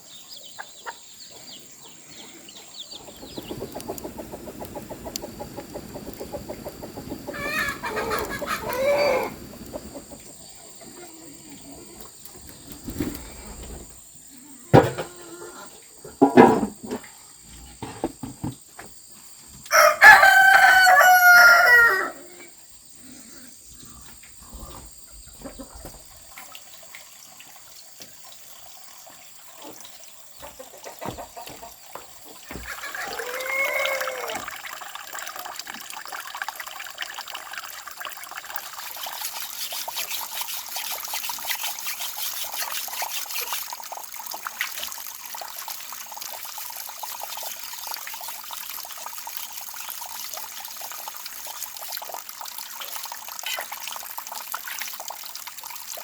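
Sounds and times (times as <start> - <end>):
water running and splashing: 2.7 - 14.2, 24.9 - 56.0
rooster crowing: 7.3 - 9.6, 19.7 - 22.3, 32.7 - 34.5.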